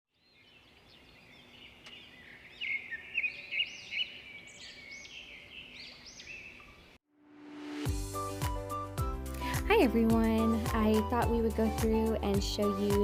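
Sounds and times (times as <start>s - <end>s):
birds chirping and calling: 0.3s - 7.0s.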